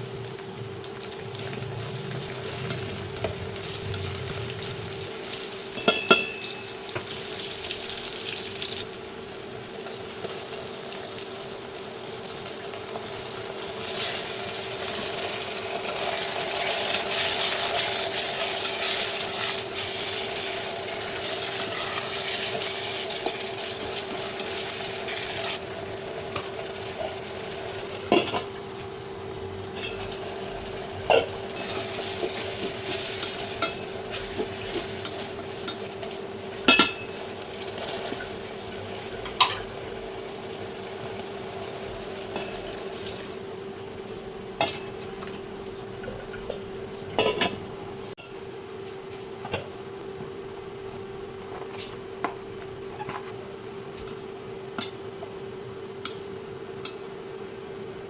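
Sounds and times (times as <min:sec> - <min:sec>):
food sizzling in a pan: 0:00.0 - 0:48.2
metal utensil clinking on pan: 0:05.8 - 0:06.7, 0:36.7 - 0:37.2, 0:39.2 - 0:39.7, 0:47.2 - 0:47.6.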